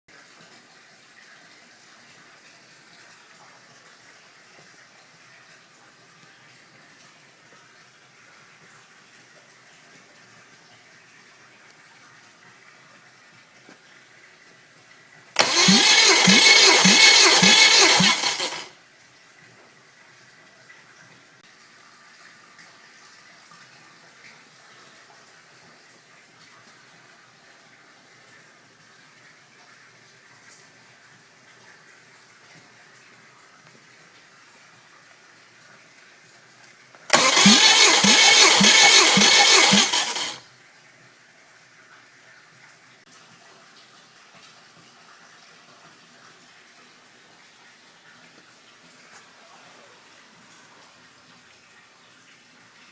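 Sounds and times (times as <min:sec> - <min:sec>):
car engine running: 0:15.4 - 0:18.7, 0:37.1 - 0:40.4.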